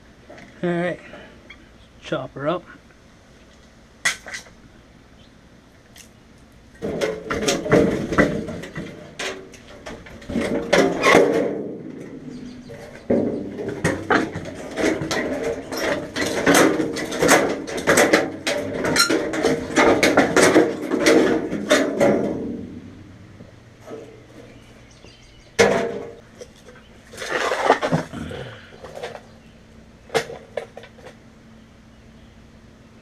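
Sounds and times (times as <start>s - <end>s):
metal clattering: 6.8s - 29.3s.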